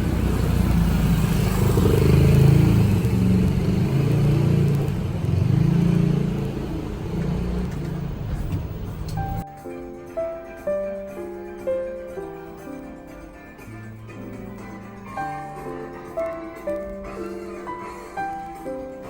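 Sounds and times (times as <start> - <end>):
vehicle engine running: 0.0 - 9.4.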